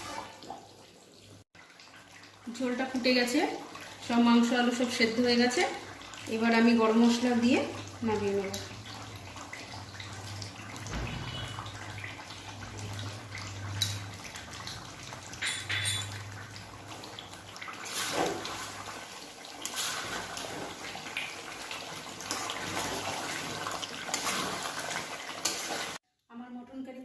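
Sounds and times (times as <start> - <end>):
curry bubbling in pot: 1.5 - 26.0
spoon clinking against pot: 15.3 - 16.2.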